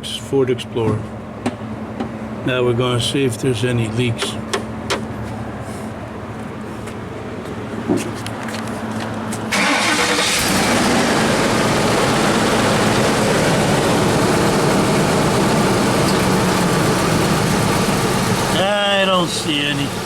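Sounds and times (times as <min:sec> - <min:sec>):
car engine starting and idling: 0:09.4 - 0:20.0.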